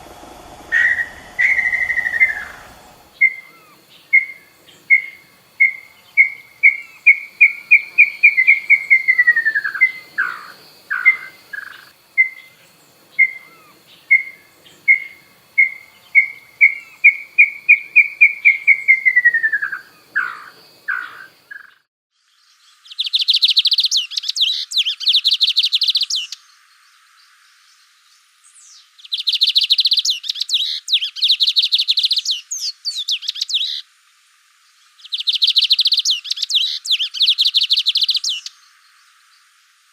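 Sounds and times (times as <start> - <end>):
bird whistling notes: 0.0 - 12.5, 13.2 - 13.5
rapid buzzing bird trill: 0.8 - 12.6.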